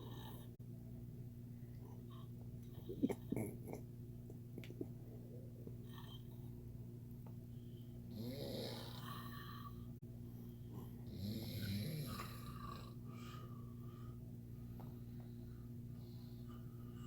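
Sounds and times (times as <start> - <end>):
steady low hum: 0.0 - 17.0
rasping snores: 8.1 - 9.8, 10.8 - 13.0.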